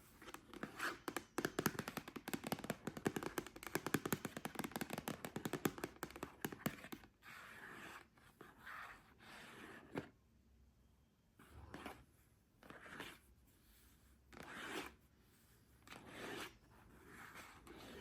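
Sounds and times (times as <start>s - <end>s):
fingernails tapping on hard surface: 0.3s - 7.0s.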